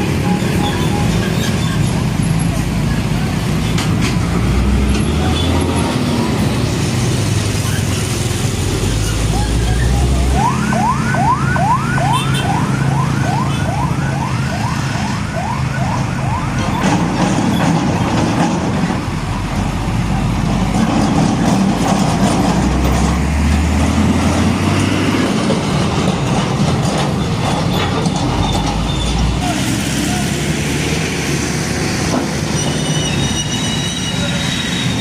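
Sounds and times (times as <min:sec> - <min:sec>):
heavy road traffic rumble: 0:00.0 - 0:35.0
electronic siren yelping: 0:09.4 - 0:16.6.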